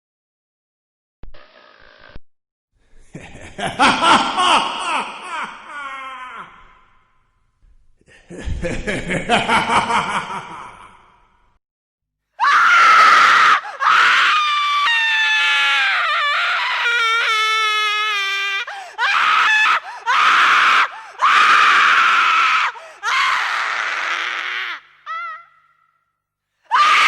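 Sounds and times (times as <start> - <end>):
high-pitched human screams: 12.4 - 25.8, 26.7 - 27.0.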